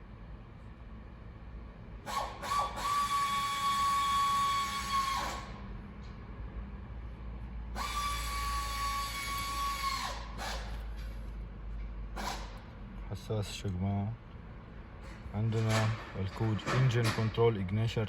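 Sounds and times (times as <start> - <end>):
high-pitched electric motor whine: 2.1 - 5.7, 7.7 - 10.8.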